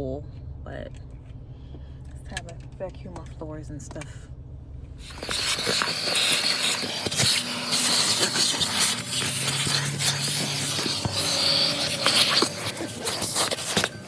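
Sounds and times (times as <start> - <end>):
vacuum hose sucking air: 5.0 - 14.0.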